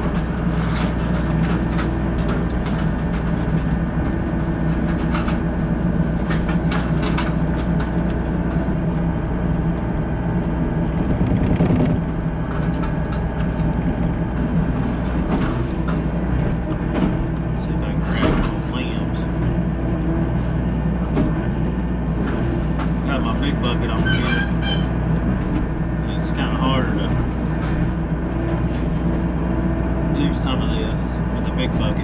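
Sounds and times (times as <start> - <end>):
metal roofing clanking and rattling: 0.0 - 8.1, 22.3 - 25.7
excavator diesel engine running: 0.0 - 32.0.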